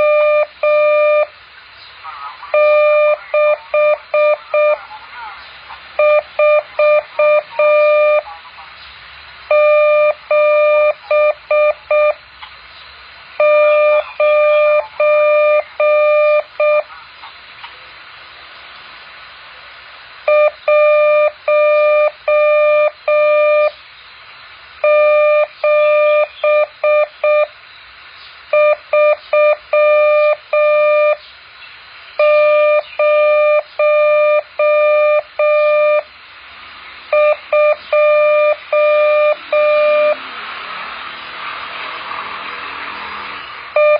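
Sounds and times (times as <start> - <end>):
morse code beeps: 0.0 - 1.3, 2.5 - 4.8, 6.0 - 8.3, 9.5 - 12.2, 13.4 - 16.9, 20.3 - 23.8, 24.8 - 27.5, 28.5 - 31.2, 32.2 - 36.1, 37.1 - 40.2.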